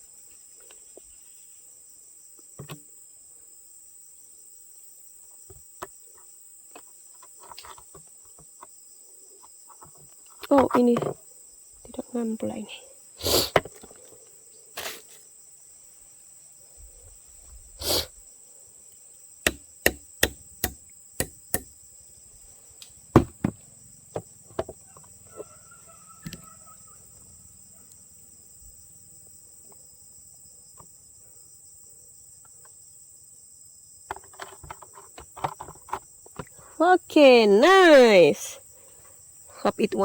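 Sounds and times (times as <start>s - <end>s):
crickets chirping: 0.0s - 40.0s
hammer knocks on wood: 19.5s - 21.7s, 23.1s - 23.6s.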